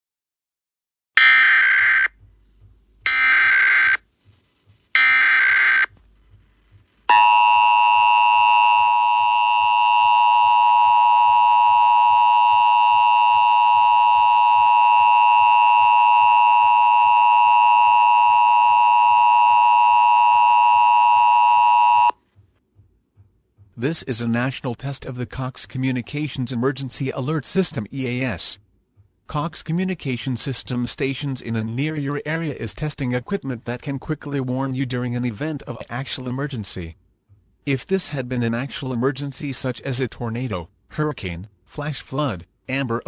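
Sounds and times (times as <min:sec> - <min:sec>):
harsh two-tone attention signal: 0:01.2 - 0:02.2, 0:05.0 - 0:05.9, 0:07.1 - 0:22.2.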